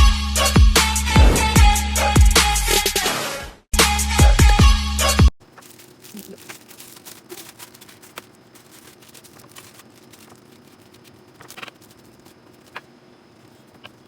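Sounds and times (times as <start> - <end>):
clicks and rustles of handling: 5.4 - 14.0.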